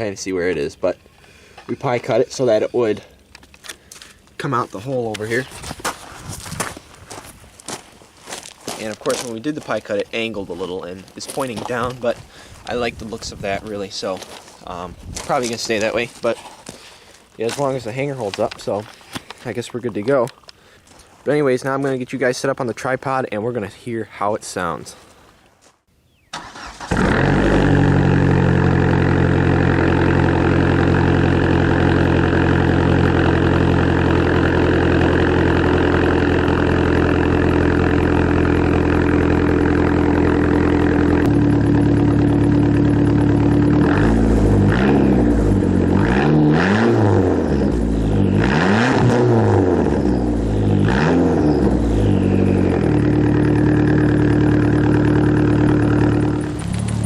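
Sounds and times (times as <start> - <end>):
car engine starting: 26.3 - 57.0
car engine idling: 26.4 - 57.0
car engine revving: 26.4 - 57.0.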